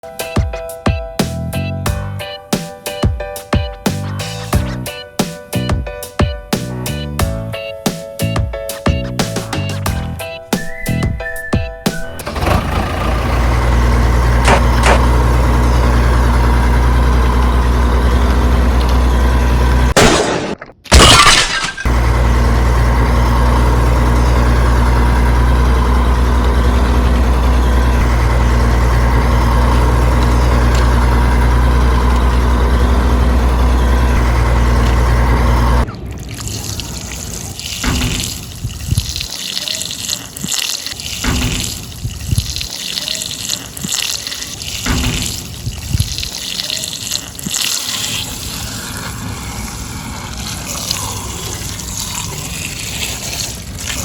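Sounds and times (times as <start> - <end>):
small motor humming: 12.1 - 20.0, 21.9 - 35.9
water splashing and trickling: 21.0 - 54.0.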